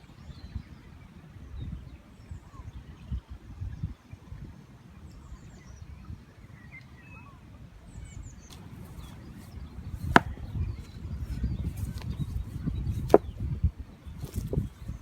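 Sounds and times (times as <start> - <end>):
wind rumble on microphone: 0.0 - 6.6, 7.8 - 15.0
stone striking stone: 8.6 - 10.6, 13.0 - 13.3.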